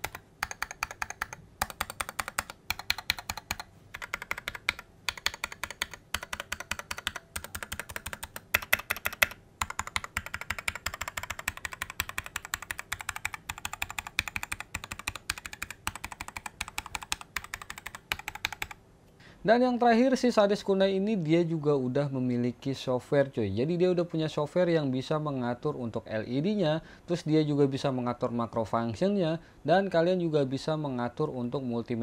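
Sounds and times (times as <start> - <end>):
mechanical keyboard typing: 0.0 - 18.8.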